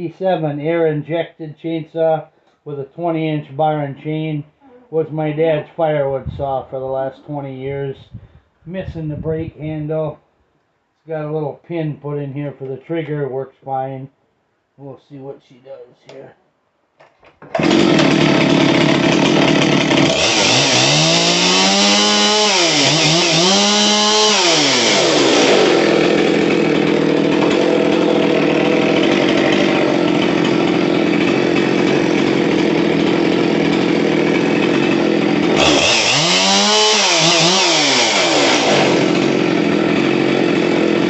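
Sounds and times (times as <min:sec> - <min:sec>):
chainsaw cutting wood: 0:06.2 - 0:06.6, 0:08.1 - 0:09.7, 0:17.4 - 0:41.0.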